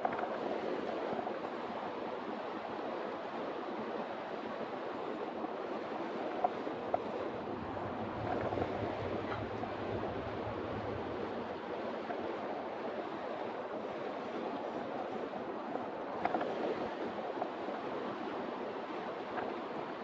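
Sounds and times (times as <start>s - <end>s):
river rushing: 4.8s - 14.1s
faint clicks: 6.4s - 12.2s.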